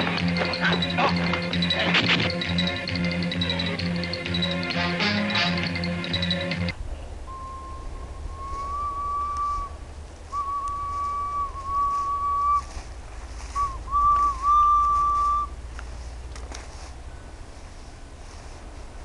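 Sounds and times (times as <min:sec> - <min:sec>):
low steady hum: 0:00.0 - 0:19.0
person whistling: 0:07.3 - 0:12.7, 0:13.6 - 0:15.6.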